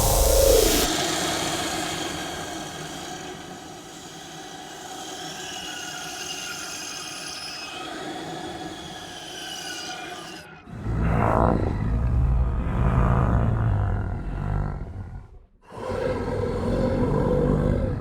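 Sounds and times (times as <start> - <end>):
hiss: 0.0 - 10.4.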